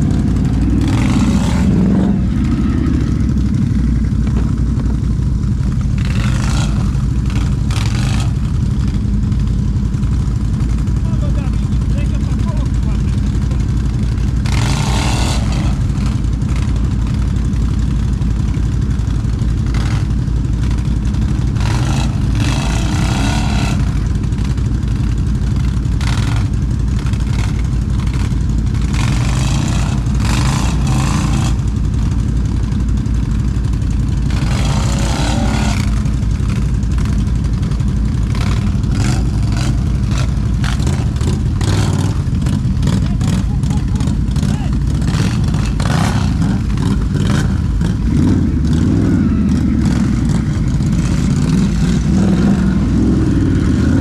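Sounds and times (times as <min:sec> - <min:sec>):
quad bike engine running: 0:00.0 - 0:54.0.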